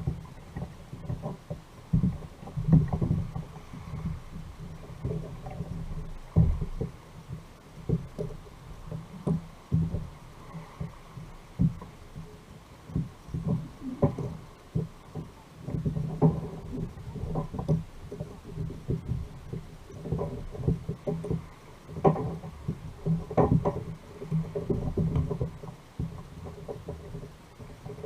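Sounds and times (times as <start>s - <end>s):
thumps and knocks on kayak hull: 0.0s - 12.2s, 12.9s - 28.0s
steady low rumble: 9.6s - 21.9s.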